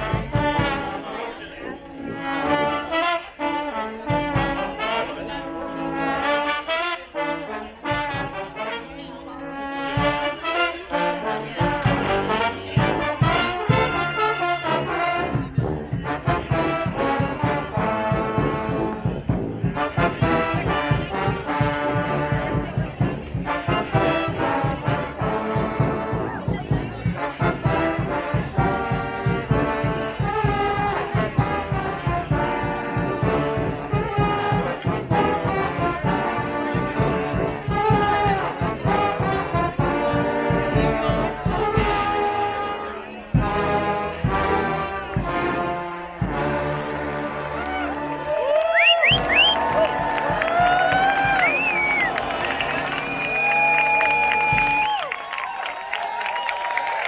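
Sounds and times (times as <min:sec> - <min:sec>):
drums: 0:00.0 - 0:01.0, 0:11.6 - 0:14.1, 0:15.0 - 0:57.0
brass band playing: 0:00.0 - 0:57.0.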